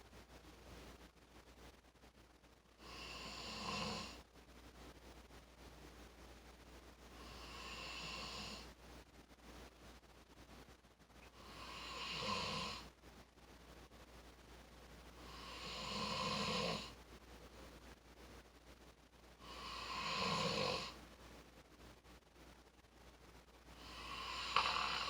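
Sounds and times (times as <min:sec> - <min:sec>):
person snoring: 0:02.8 - 0:04.2, 0:07.2 - 0:08.6, 0:11.4 - 0:12.8, 0:15.2 - 0:16.9, 0:19.4 - 0:21.0, 0:23.8 - 0:25.0.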